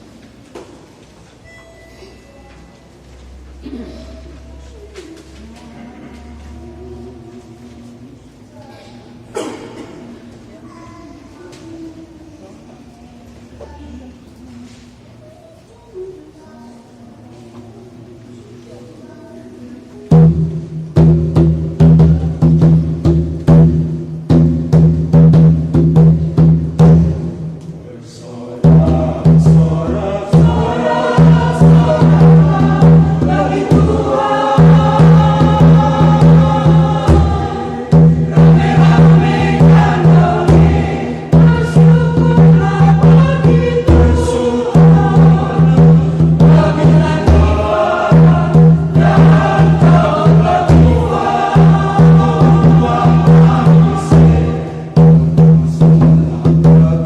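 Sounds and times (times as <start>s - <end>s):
hand drum beating: 20.1s - 27.3s, 28.7s - 57.0s
choir singing a hymn: 28.0s - 57.0s.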